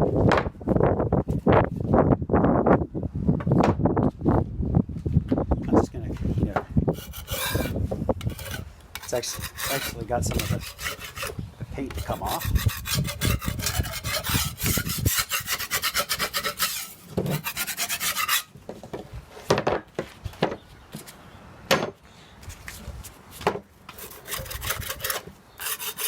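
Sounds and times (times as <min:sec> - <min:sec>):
paint scraping off steel: 0:07.0 - 0:18.5, 0:23.9 - 0:26.0.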